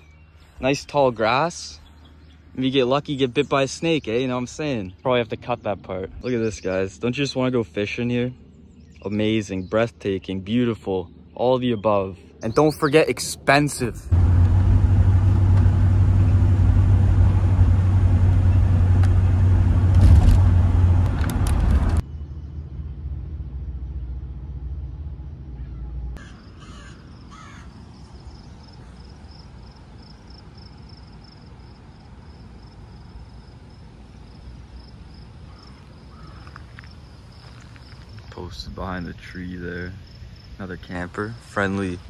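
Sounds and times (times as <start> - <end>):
quiet rumble: 13.8 - 42.0
loud low rumble: 14.0 - 26.2
crickets chirping: 25.1 - 42.0
crow cawing: 26.2 - 27.8, 35.5 - 36.7.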